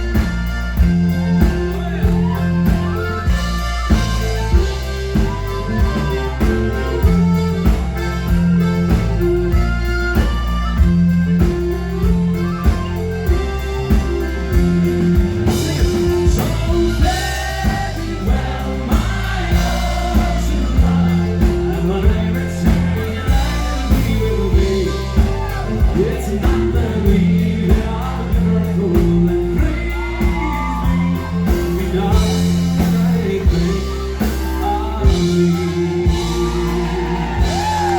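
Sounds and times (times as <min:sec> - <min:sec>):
live band playing upbeat song: 0:00.0 - 0:37.9
person singing: 0:11.3 - 0:37.9.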